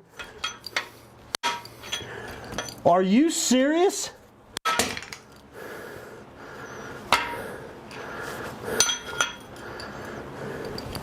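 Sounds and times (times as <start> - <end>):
hammer striking metal: 1.4 - 2.0, 7.1 - 7.4, 8.8 - 9.4
ringing metallic clanks: 8.8 - 9.9.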